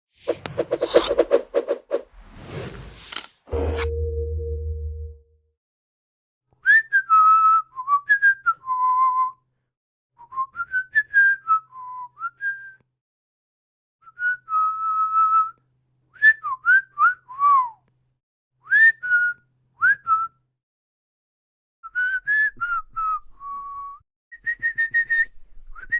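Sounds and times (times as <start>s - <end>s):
man whistling: 6.6s - 9.4s, 10.2s - 12.8s, 14.0s - 15.6s, 16.2s - 17.8s, 18.6s - 20.4s, 21.8s - 25.9s.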